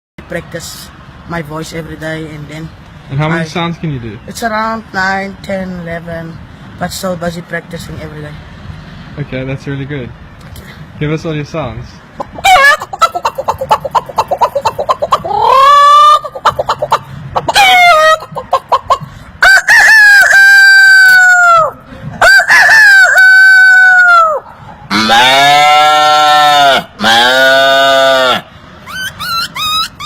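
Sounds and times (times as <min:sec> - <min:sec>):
man imitating chicken clucking: 0:12.2 - 0:30.0
man imitating rooster crows: 0:15.3 - 0:16.2, 0:19.4 - 0:29.9.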